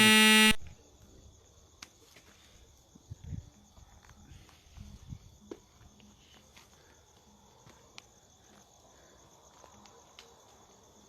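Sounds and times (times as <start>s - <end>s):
faint crickets chirring: 0.0s - 11.0s.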